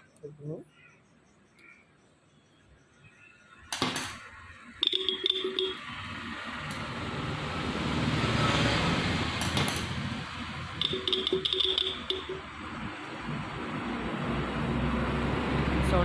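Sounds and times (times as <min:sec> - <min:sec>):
electric vehicle horn blasts: 0:10.8 - 0:12.5.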